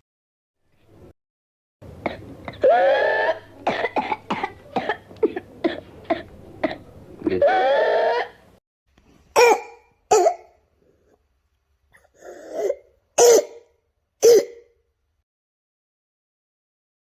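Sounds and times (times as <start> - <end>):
person coughing: 2.0 - 7.4, 9.4 - 10.6, 12.0 - 14.7.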